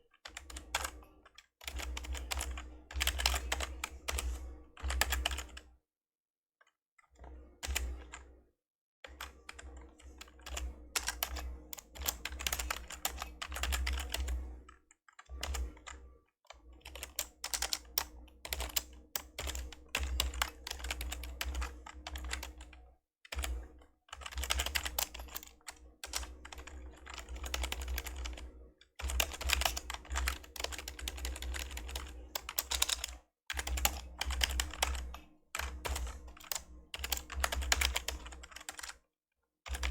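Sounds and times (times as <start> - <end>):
typing on computer keyboard: 0.1 - 5.7, 7.6 - 8.3, 9.1 - 39.0, 39.7 - 39.9.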